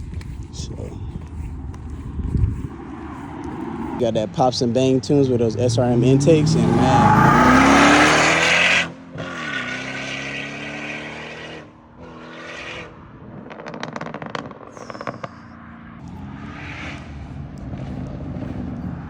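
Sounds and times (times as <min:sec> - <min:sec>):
car engine revving: 0:01.8 - 0:19.0
exhaust crackling and popping: 0:13.1 - 0:19.0.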